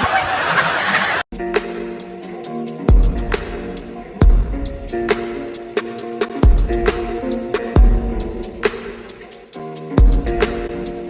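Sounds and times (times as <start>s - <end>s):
hi-hat ticks: 4.6s - 11.0s.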